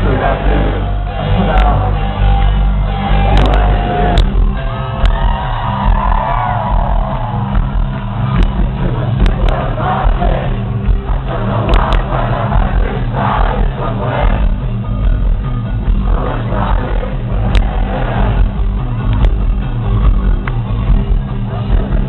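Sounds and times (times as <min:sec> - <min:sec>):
audience shouting: 0:00.0 - 0:10.7
rock band playing live: 0:00.0 - 0:22.0.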